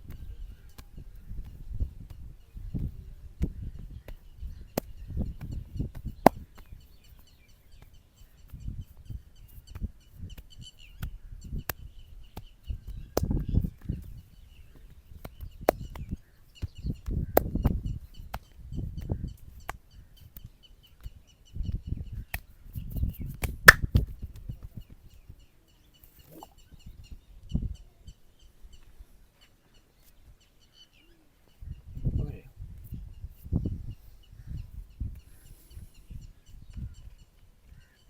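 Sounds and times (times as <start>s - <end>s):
sharp snaps: 23.4s - 24.0s
faint bird chirping: 24.6s - 38.0s.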